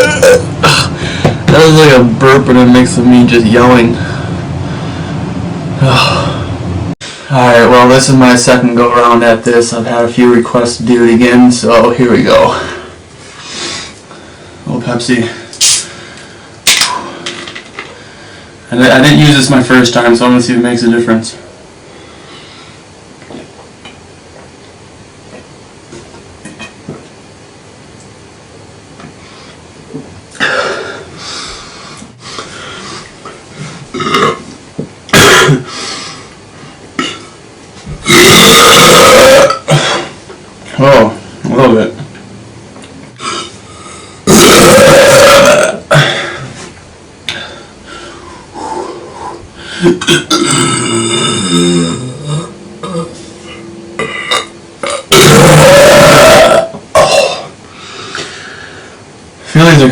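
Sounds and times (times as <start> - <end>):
man belching loudly: 0.0 - 1.0, 33.9 - 34.5, 35.1 - 35.7, 38.0 - 40.1, 44.3 - 46.4, 49.8 - 53.2, 54.0 - 57.6
man burping: 0.0 - 1.2, 5.8 - 6.5, 30.3 - 31.0, 33.9 - 34.5, 35.1 - 35.7, 37.0 - 37.4, 38.0 - 40.2, 44.2 - 46.6, 49.8 - 58.2.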